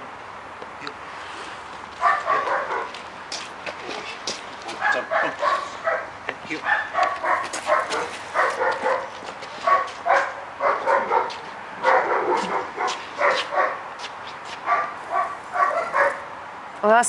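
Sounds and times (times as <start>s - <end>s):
dog barking: 2.0s - 3.0s, 4.7s - 13.8s, 14.6s - 16.3s.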